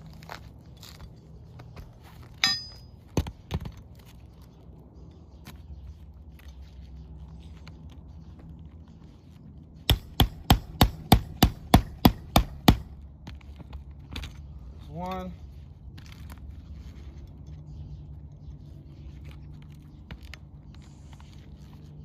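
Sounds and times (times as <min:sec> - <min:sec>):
hammer driving a nail: 0:09.9 - 0:12.9.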